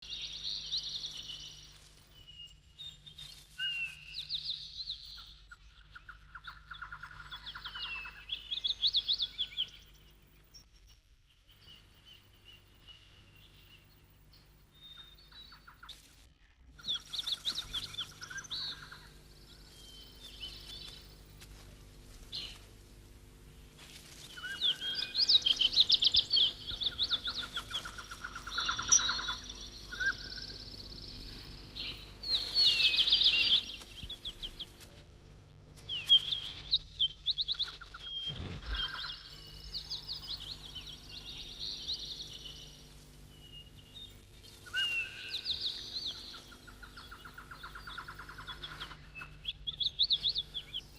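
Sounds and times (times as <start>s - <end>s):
bird chirping song: 0.0s - 16.1s, 16.8s - 35.0s, 35.8s - 50.9s
faint low hum: 0.0s - 50.9s.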